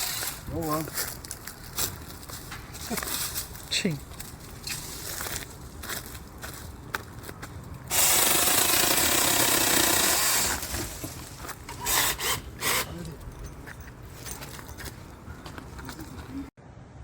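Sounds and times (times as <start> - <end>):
mini chainsaw cutting wood: 7.9 - 13.1.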